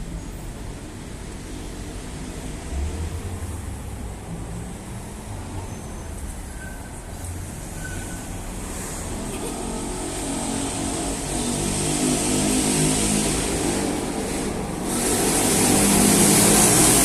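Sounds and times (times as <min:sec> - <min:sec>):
low rumble of traffic: 0:00.0 - 0:17.0
vehicle passing: 0:07.3 - 0:17.0.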